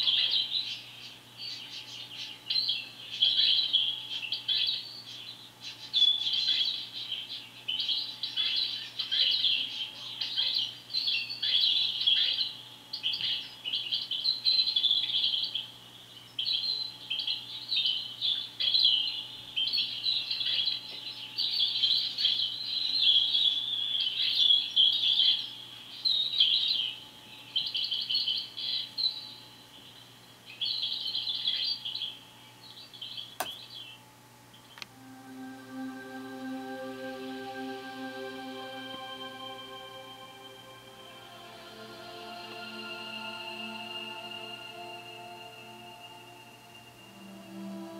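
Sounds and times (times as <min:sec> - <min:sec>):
small birds chirping: 0:00.0 - 0:34.9.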